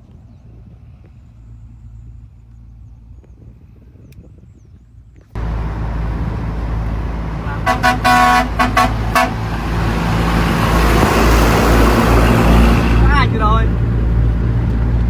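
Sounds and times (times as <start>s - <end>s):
heavy engine running: 5.4s - 15.0s
vehicle horn toots: 7.5s - 9.8s.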